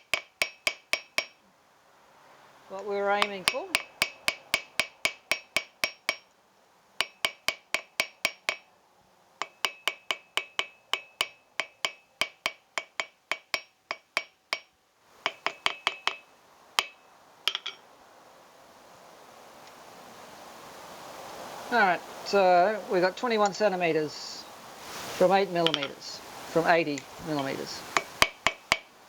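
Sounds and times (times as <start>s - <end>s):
hammer striking metal on anvil: 0.0s - 1.4s, 3.2s - 6.3s, 7.0s - 8.7s, 9.4s - 16.2s, 16.8s - 17.8s, 25.6s - 26.0s, 27.0s - 28.9s.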